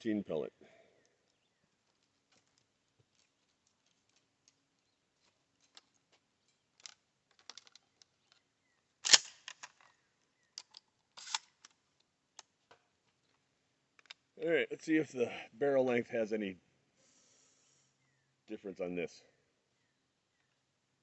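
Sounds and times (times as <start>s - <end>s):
shotgun handling clicks: 6.7s - 12.8s, 13.9s - 14.2s.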